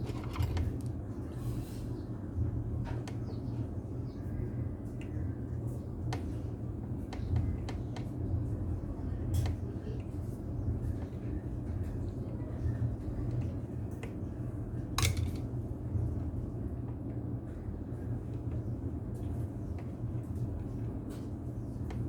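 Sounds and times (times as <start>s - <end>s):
tools and parts clinking: 0.0s - 0.9s, 15.0s - 15.4s.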